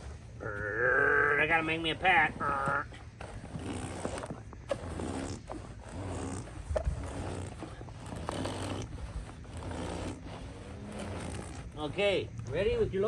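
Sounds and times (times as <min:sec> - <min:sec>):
person making engine noises: 0:00.0 - 0:13.0
rumbling scraping background: 0:00.0 - 0:13.0.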